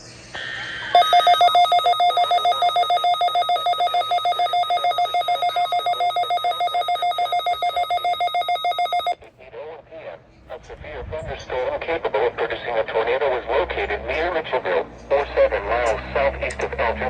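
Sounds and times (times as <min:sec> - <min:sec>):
high electronic alarm beeping: 0:00.9 - 0:09.2.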